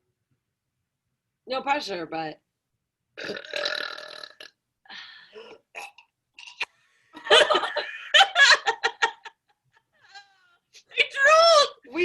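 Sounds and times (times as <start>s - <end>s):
women laughing: 7.2s - 10.6s.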